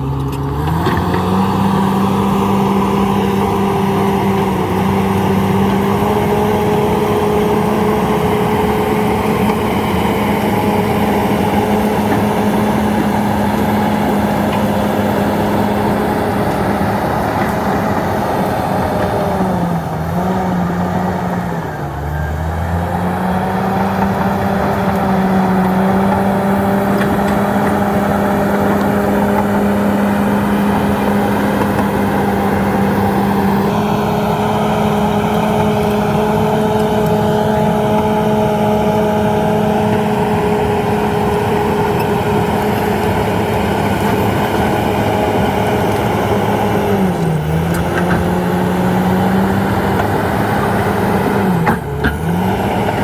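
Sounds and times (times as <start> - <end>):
bulldozer diesel engine revving: 0.0 - 53.0.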